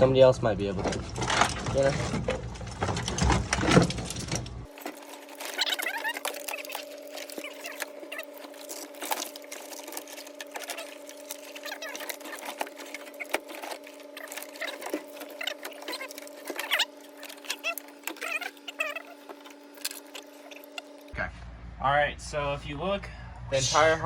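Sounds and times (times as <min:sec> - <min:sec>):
steady low hum: 0:00.0 - 0:24.0
rustling wires: 0:00.6 - 0:21.2
wires squeaking: 0:00.7 - 0:21.2
wires and connectors clicking: 0:03.6 - 0:21.2.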